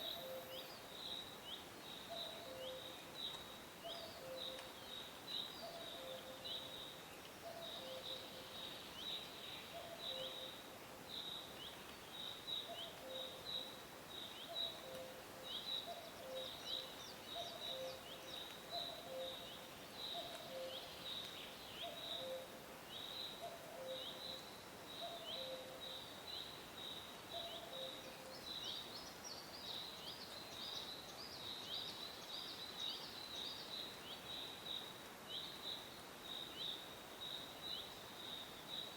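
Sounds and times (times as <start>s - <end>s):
cuckoo calling: 0.0s - 0.7s, 3.8s - 4.7s, 14.4s - 22.6s, 25.0s - 25.8s
small birds chirping: 0.0s - 38.9s.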